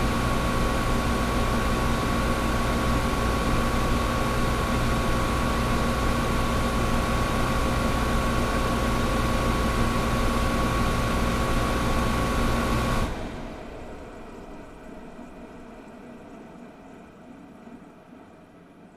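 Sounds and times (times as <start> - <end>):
air conditioner hiss: 0.0 - 18.9
air conditioner hum: 0.0 - 18.9.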